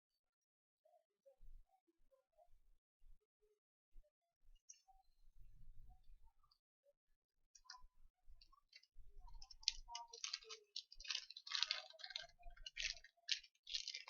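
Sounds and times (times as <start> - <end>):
light clicks of small parts: 7.6 - 14.0
plastic bags rustling: 9.4 - 14.0.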